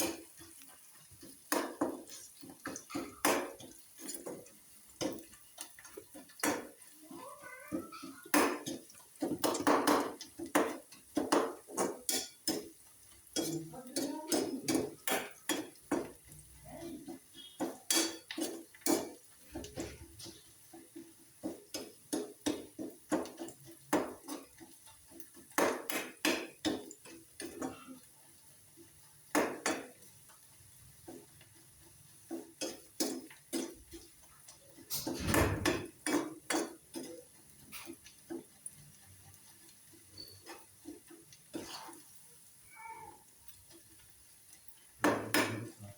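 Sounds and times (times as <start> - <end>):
utensils clinking against dishes: 1.2 - 6.9, 7.8 - 28.1, 32.3 - 42.1.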